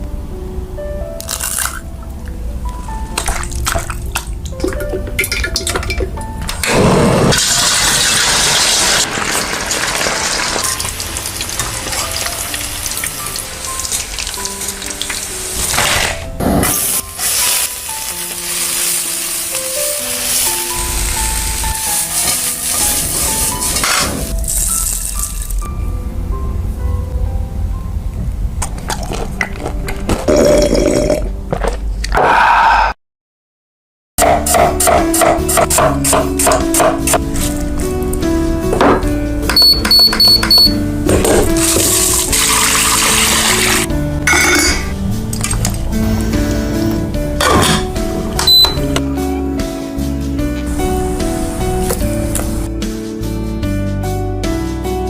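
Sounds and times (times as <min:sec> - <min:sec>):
background music: 0:00.0 - 0:32.1, 0:34.2 - 0:55.0
background music with steady beat: 0:02.2 - 0:06.6, 0:34.2 - 0:55.0
food sizzling in hot oil: 0:07.4 - 0:15.8, 0:16.7 - 0:25.5, 0:41.6 - 0:43.9.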